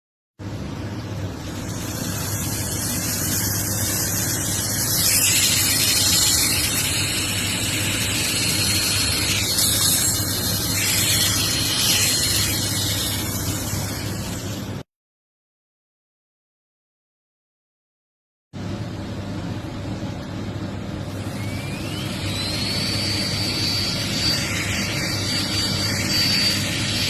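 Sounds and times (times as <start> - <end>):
electric nail drill motor: 1.6 - 14.7, 21.0 - 27.0.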